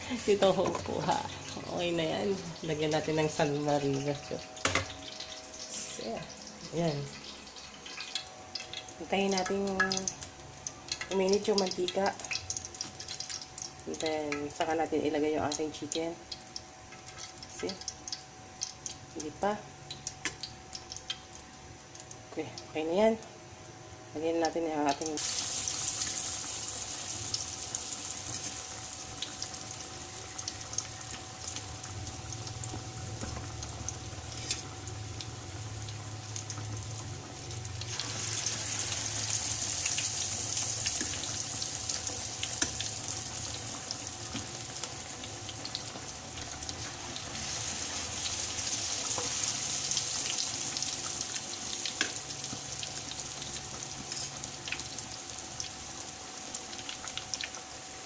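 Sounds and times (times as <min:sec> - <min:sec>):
chicken deep-frying in hot oil: 0:00.0 - 0:58.0
oil popping and crackling: 0:24.9 - 0:57.6.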